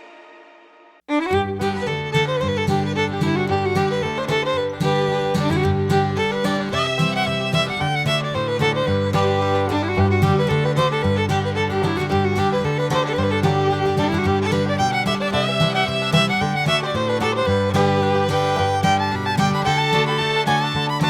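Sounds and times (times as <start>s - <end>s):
fiddle-led bluegrass music: 0.0s - 21.0s.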